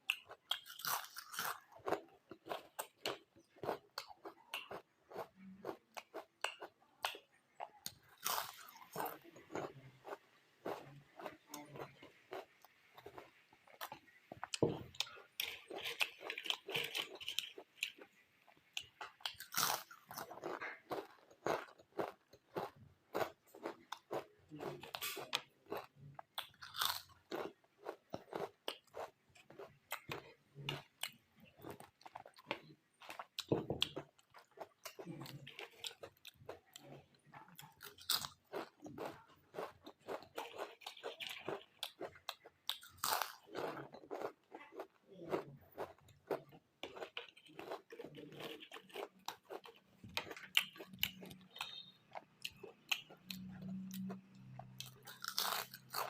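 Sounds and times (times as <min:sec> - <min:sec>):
crunching chips: 0:07.9 - 0:18.1, 0:18.8 - 0:30.1, 0:37.6 - 0:56.0.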